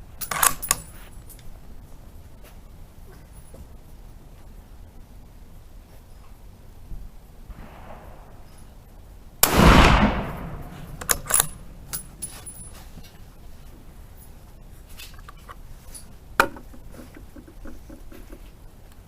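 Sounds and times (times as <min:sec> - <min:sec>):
rifle shot: 0:07.5 - 0:08.7, 0:09.4 - 0:12.2.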